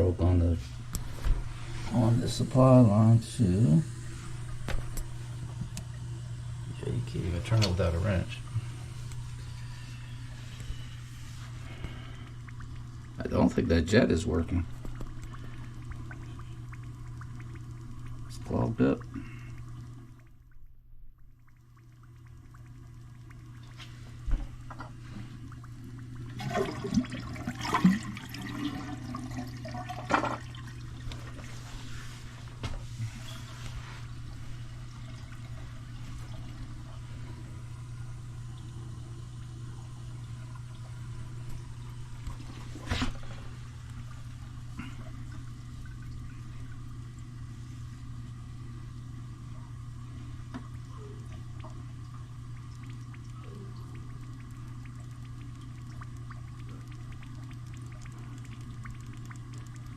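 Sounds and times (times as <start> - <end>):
water running into toilet tank: 0.0 - 20.6, 21.2 - 32.2, 32.9 - 59.9
toilet flushing: 1.0 - 20.2, 21.8 - 47.7.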